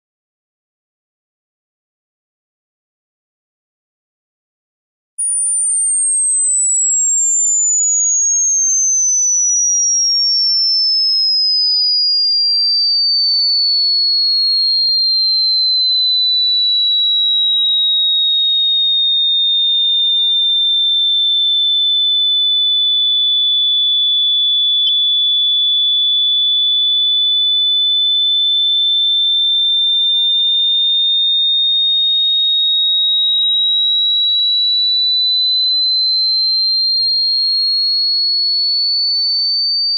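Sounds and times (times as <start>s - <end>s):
high electronic sine tone: 5.2s - 17.7s.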